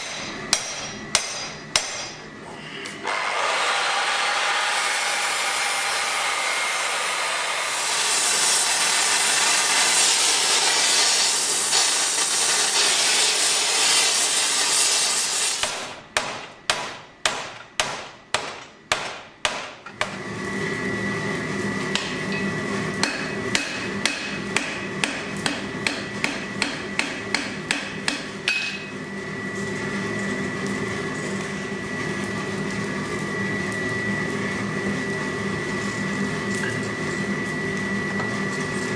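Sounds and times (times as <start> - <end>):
hammer striking steel on anvil: 0.0 - 2.2, 15.6 - 20.2, 23.0 - 29.0.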